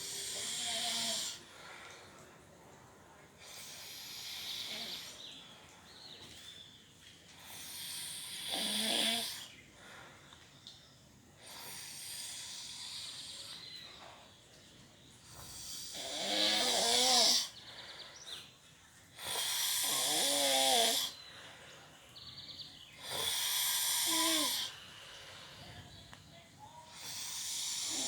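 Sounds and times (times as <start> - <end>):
woman snoring: 0.0 - 1.4, 3.5 - 5.2, 7.7 - 9.4, 15.6 - 17.5, 19.2 - 21.2, 23.0 - 24.8, 26.9 - 28.0.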